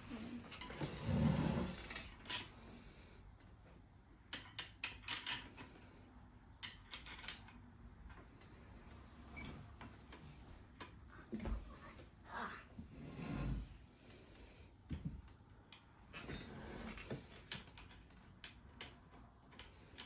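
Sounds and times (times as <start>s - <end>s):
small metal parts clinking: 1.8s - 2.5s, 4.3s - 5.8s, 6.6s - 7.6s.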